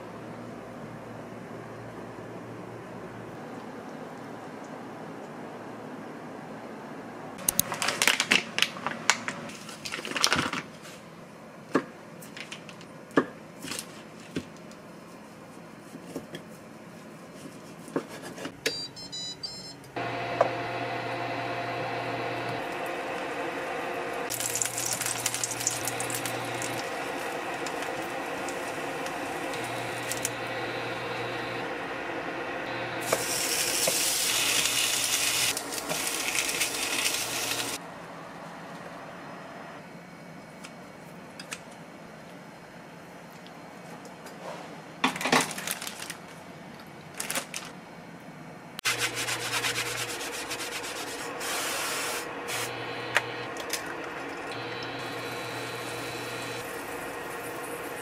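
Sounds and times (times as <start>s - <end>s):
appliance electrical hum: 0.0s - 58.0s
kitchen appliance beeping: 18.6s - 35.5s, 50.9s - 58.0s.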